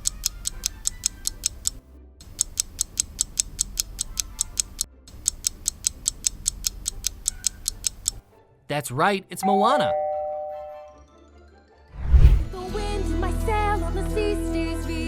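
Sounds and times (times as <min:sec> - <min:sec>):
timer ticking: 0:00.0 - 0:08.2.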